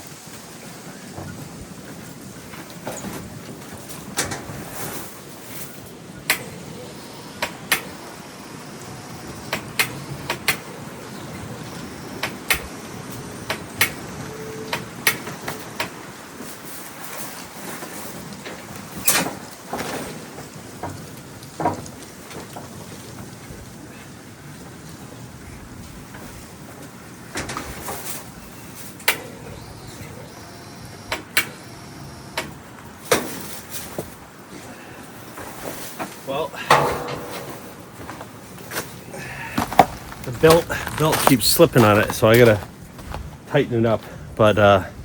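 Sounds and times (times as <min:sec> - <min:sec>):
handling noise: 0:00.0 - 0:43.5
sharp clicks and knocks: 0:12.2 - 0:12.7, 0:36.7 - 0:38.9.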